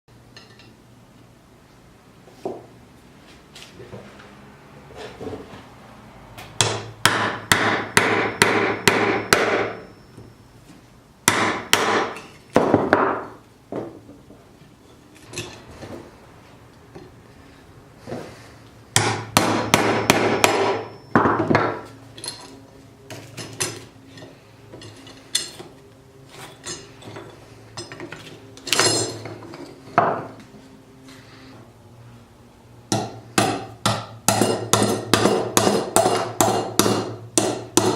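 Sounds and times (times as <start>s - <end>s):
hammer blows: 6.6s - 10.4s, 18.9s - 21.9s
faint high ringing tone: 8.2s - 11.0s, 20.0s - 22.8s.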